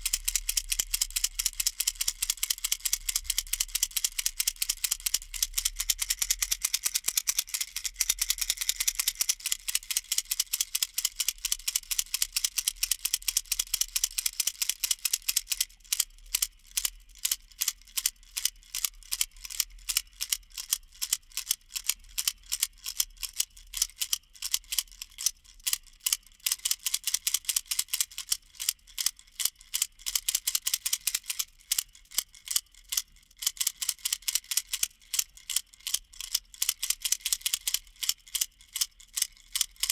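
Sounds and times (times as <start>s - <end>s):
plastic baby rattle shaken: 0.0s - 39.9s.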